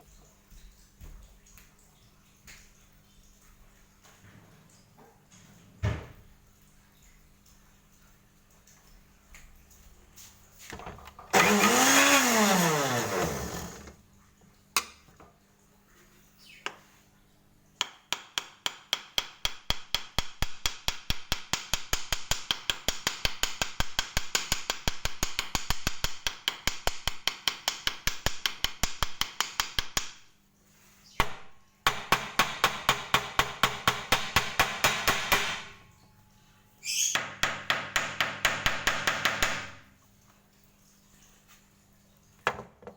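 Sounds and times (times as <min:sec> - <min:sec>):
power tool motor whirring: 0:11.3 - 0:14.0.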